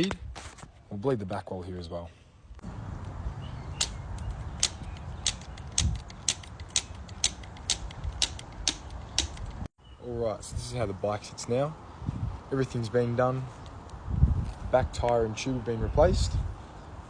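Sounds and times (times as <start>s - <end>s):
sharp mechanical clicking: 3.8s - 9.7s.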